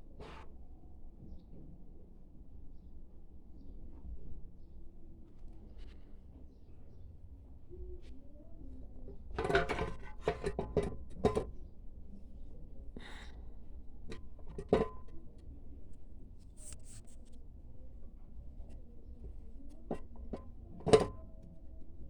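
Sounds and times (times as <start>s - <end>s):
metallic clunks and rattles: 9.3s - 11.5s, 19.9s - 21.2s.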